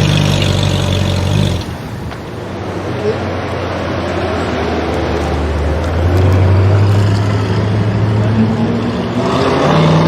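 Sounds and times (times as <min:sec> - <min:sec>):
sports car engine revving: 0:00.0 - 0:02.4.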